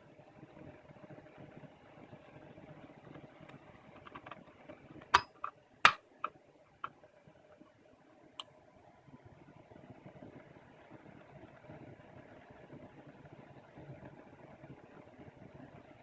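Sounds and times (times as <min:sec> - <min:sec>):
sharp clicks and knocks: 0:04.0 - 0:04.4, 0:05.0 - 0:06.0.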